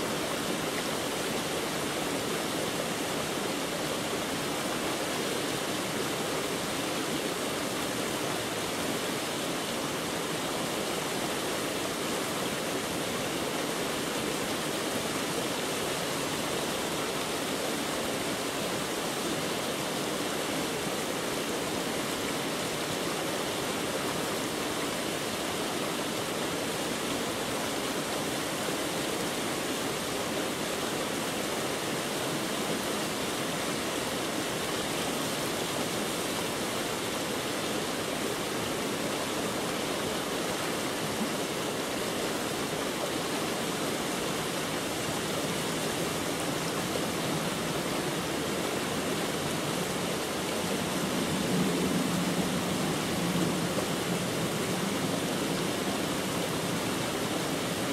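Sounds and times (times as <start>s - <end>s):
steady rushing noise: 44.5s - 57.9s.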